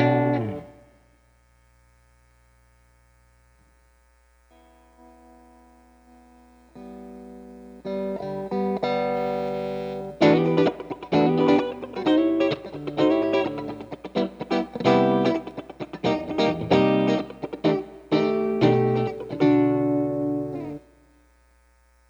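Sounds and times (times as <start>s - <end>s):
electric guitar chords: 0.0s - 1.1s, 4.5s - 21.1s.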